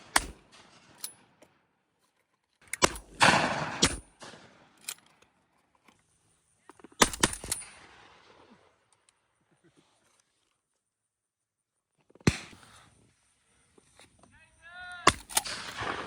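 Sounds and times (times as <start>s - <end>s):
shotguns firing: 0.0s - 1.3s, 2.8s - 4.8s, 7.0s - 8.7s, 12.2s - 12.8s, 15.0s - 16.0s.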